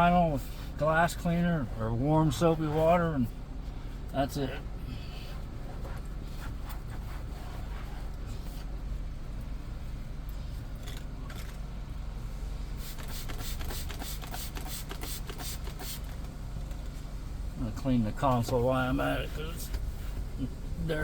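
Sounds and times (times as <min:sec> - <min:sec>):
steady low hum: 0:00.0 - 0:21.0
scrubbing vinyl car seat: 0:05.7 - 0:08.7.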